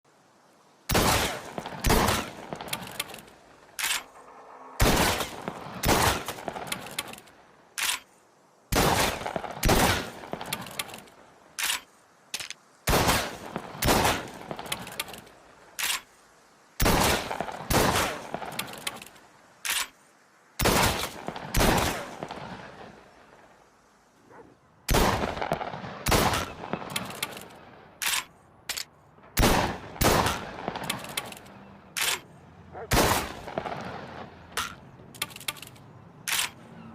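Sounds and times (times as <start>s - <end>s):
shotgun shots reverberating: 4.8s - 7.0s, 8.7s - 10.8s, 24.9s - 27.4s, 29.4s - 31.3s, 32.8s - 34.3s.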